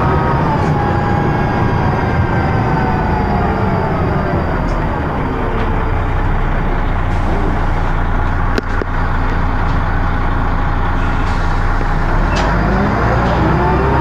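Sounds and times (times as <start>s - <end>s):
rising whines: 0.0s - 7.9s, 11.8s - 14.0s
bus diesel engine droning: 0.0s - 14.0s.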